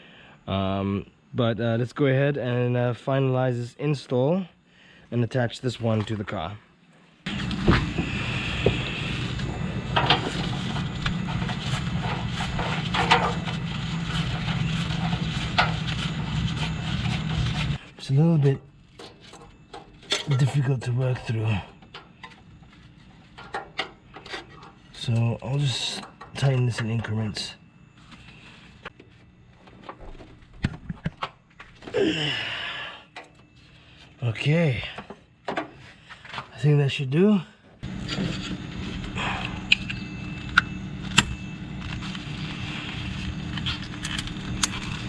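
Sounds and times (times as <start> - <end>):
steady low hum: 0.0 - 45.0
person groaning: 31.9 - 32.9.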